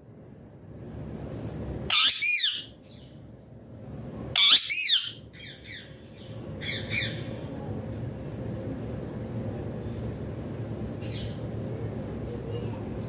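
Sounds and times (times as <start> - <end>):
parrot chattering calls: 1.9 - 2.8, 4.4 - 5.9
parrot squawking: 1.9 - 2.8, 4.4 - 5.9.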